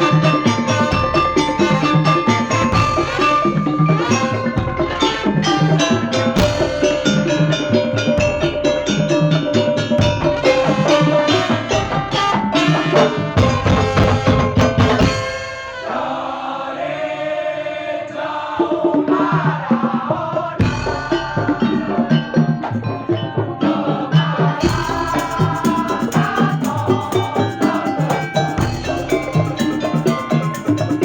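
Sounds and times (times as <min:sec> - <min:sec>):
fast beaten drums: 0:00.0 - 0:15.8, 0:18.4 - 0:31.0
ringing melodic line: 0:24.7 - 0:31.0.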